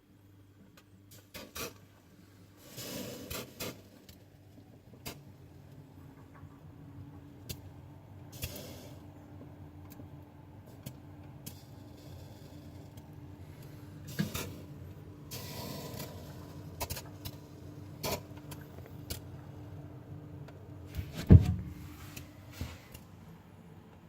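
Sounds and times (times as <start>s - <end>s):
fridge humming: 20.5s - 23.0s.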